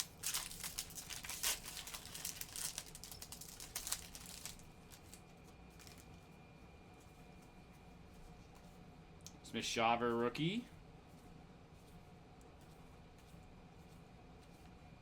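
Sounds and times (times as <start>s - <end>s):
foil wrapper crinkling: 0.0s - 6.2s.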